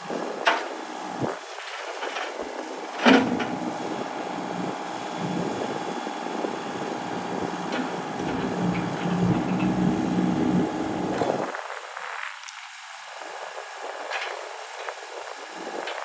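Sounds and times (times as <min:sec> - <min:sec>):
diesel engine running: 0:00.4 - 0:11.5.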